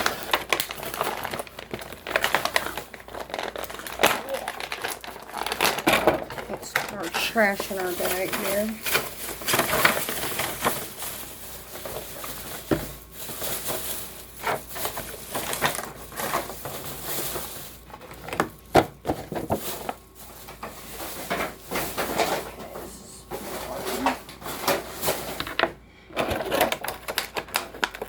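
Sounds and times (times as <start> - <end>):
packaging rustling and crinkling: 0.0 - 28.0.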